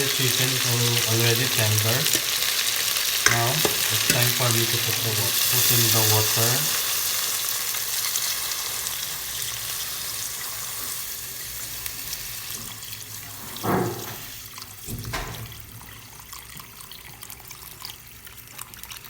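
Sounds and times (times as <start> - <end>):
water sizzling in hot pot: 0.0 - 19.0.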